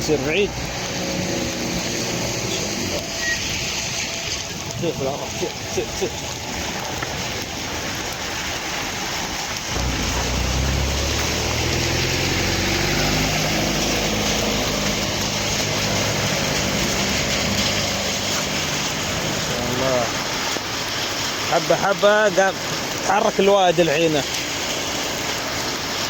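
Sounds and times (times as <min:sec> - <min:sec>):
heavy rain hissing: 0:00.0 - 0:26.0
running water: 0:00.0 - 0:26.0
deep thunder rumble: 0:01.0 - 0:20.5.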